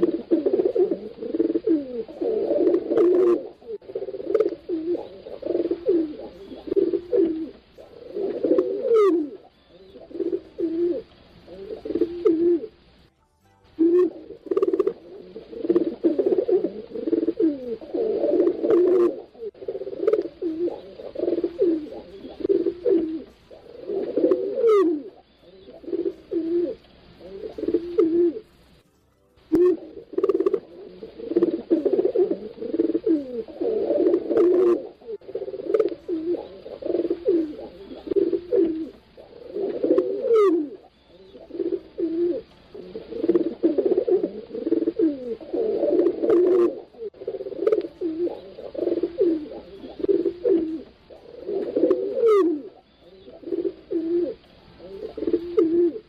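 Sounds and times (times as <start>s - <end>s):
pigeons cooing: 0.0s - 13.1s, 13.8s - 28.8s, 29.4s - 56.0s
high falling bird chirps: 20.5s - 32.8s, 40.0s - 43.1s.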